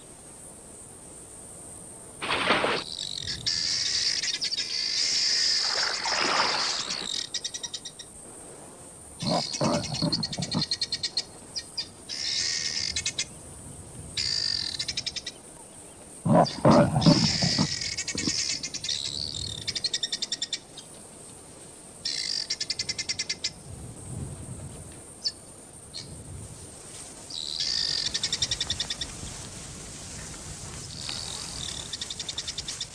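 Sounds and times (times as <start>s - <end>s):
animal high pulsing trill: 9.2s - 10.7s, 16.3s - 18.7s
deep low animal call: 9.2s - 10.8s, 16.2s - 18.8s.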